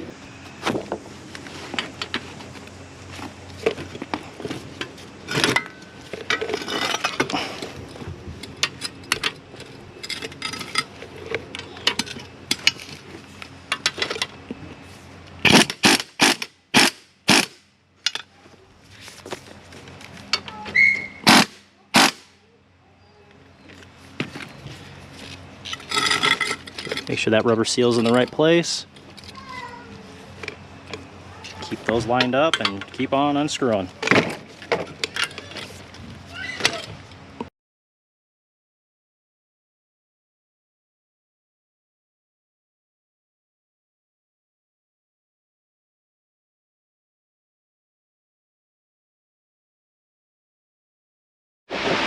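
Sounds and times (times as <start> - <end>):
metal tools clinking and scraping: 3.6 - 14.3, 23.6 - 29.6, 30.4 - 33.1, 33.7 - 36.0.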